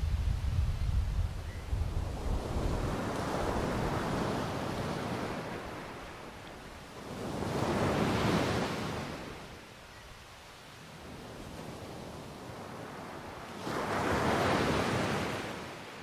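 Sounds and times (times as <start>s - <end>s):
ocean waves breaking: 2.0s - 9.6s, 12.1s - 16.0s.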